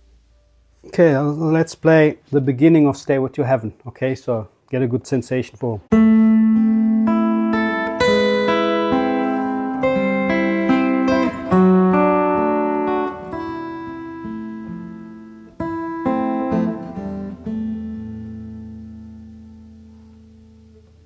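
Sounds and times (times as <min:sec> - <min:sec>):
fingerstyle acoustic guitar: 0:05.9 - 0:21.0.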